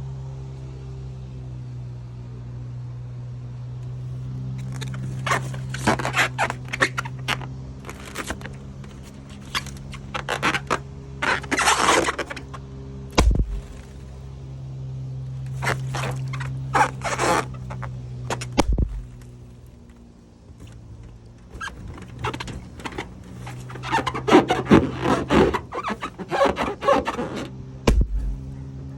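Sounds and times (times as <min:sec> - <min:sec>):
steady low hum: 0:03.9 - 0:28.9
rubbery balloon squeaking: 0:04.6 - 0:12.6, 0:13.2 - 0:14.2, 0:15.4 - 0:19.3, 0:20.5 - 0:28.6
balloon popping: 0:13.2 - 0:13.9, 0:21.6 - 0:28.4.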